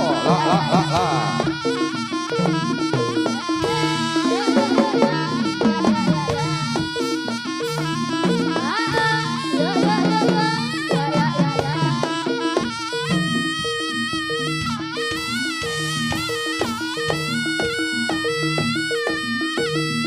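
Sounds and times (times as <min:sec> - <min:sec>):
metallophones striking short notes: 0:00.0 - 0:10.7
gamelan ensemble music: 0:00.0 - 0:20.0
hand drums: 0:00.0 - 0:20.0
reed melody bending in pitch: 0:00.0 - 0:20.0.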